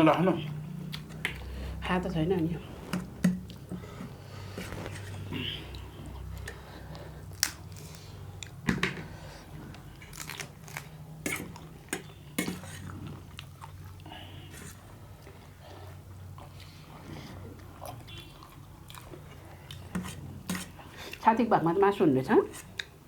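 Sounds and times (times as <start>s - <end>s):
chewing: 0.4s - 1.6s, 9.6s - 21.2s.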